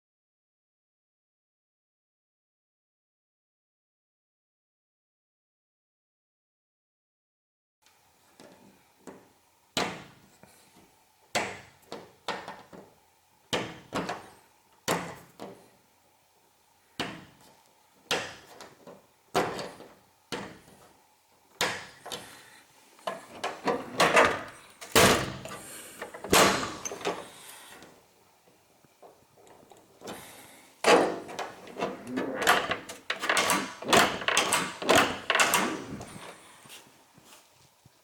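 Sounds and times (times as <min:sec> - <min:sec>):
folding door panels clacking: 0:13.5 - 0:14.3, 0:18.1 - 0:20.7, 0:23.1 - 0:27.4, 0:30.0 - 0:36.4
door panels scraping along track: 0:21.8 - 0:28.0, 0:29.6 - 0:36.8.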